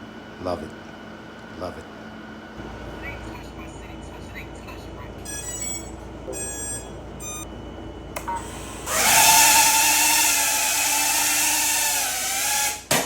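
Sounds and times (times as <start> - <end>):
quadcopter motors whining: 8.3 - 12.9.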